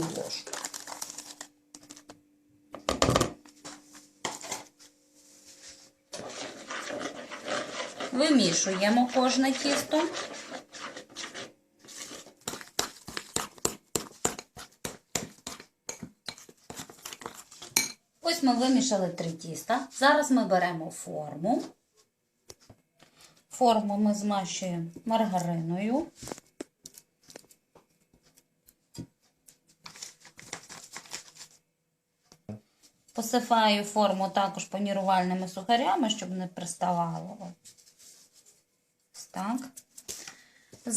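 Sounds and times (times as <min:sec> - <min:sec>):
spoon stirring batter in bowl: 0:04.2 - 0:18.0, 0:24.9 - 0:31.5.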